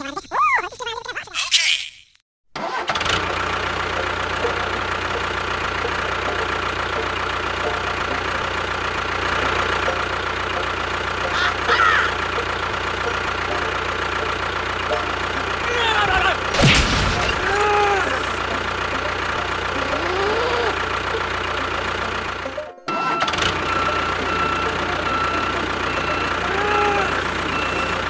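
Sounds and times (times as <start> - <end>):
motor humming: 3.1 - 28.0.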